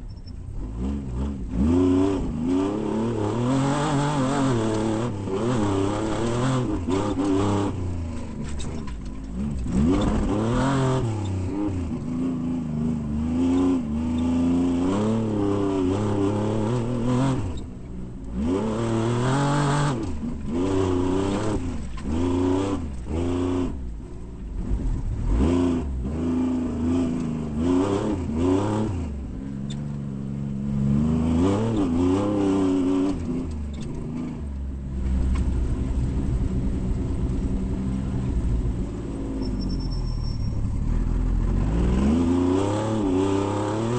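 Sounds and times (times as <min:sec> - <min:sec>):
race vehicle engine revving: 0:00.6 - 0:43.9.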